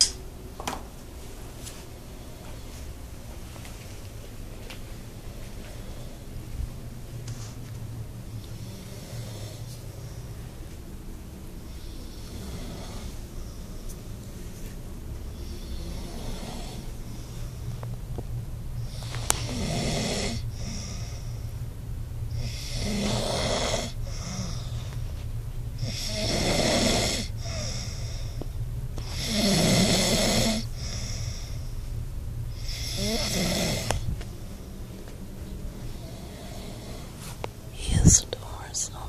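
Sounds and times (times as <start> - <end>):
steady low hum: 0.0 - 39.0
man snoring loudly: 8.5 - 9.6, 11.7 - 13.2, 15.4 - 17.0, 18.8 - 21.3, 22.3 - 24.8, 25.8 - 28.3, 29.0 - 31.5, 32.6 - 34.1, 35.9 - 37.1.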